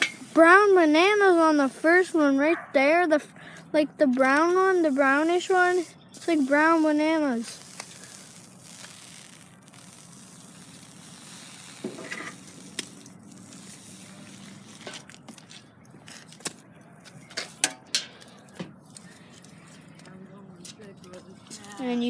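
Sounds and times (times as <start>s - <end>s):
marshmallow sizzling hiss: 0.0s - 2.5s, 4.2s - 14.8s.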